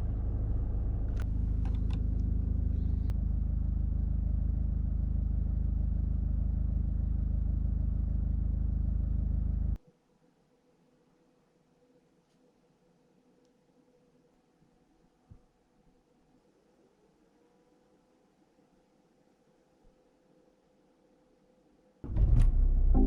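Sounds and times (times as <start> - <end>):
car engine idling: 0.0 - 9.8.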